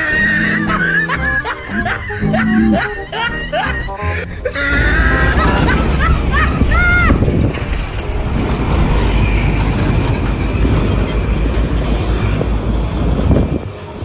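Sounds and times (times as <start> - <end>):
rising and falling tone: 0.0 - 11.1
heavy vehicle engine rumble passing: 0.0 - 14.0.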